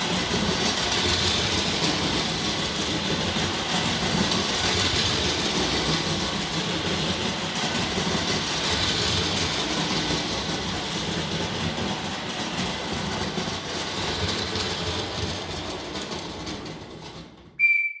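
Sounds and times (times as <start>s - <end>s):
toy train wheels rattling on track: 0.0s - 17.6s.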